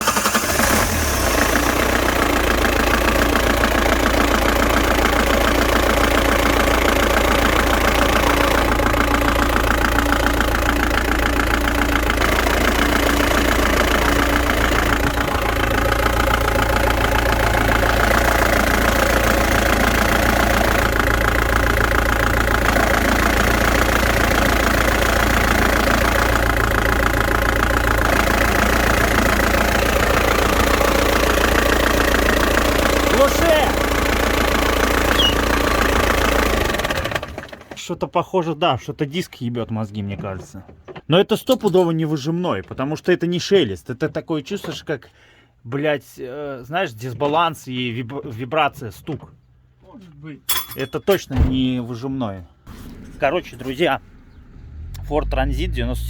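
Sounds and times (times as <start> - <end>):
van engine idling with knock: 1.4 - 37.6.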